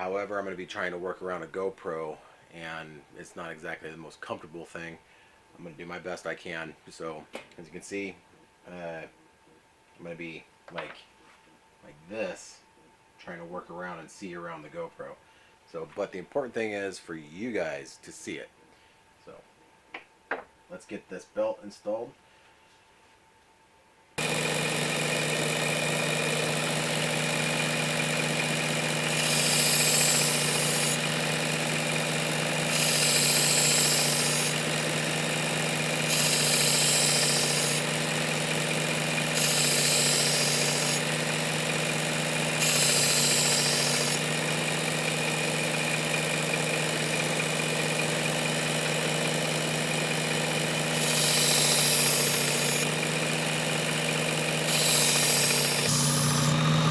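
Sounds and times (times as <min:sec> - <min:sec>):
belt sharpener motor hum: 0:24.2 - 0:56.9.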